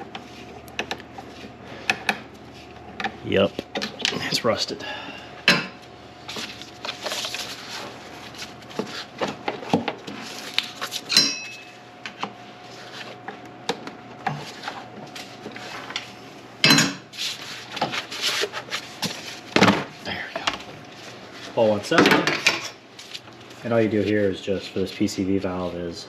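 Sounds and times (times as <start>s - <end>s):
metal tools clinking: 11.1s - 11.7s
ringing metallic clink: 11.1s - 11.7s.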